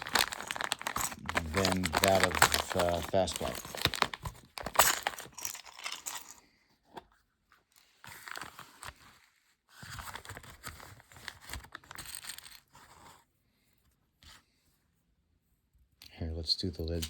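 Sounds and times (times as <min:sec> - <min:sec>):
crinkly packaging rustling: 0:00.0 - 0:06.9, 0:07.6 - 0:13.2.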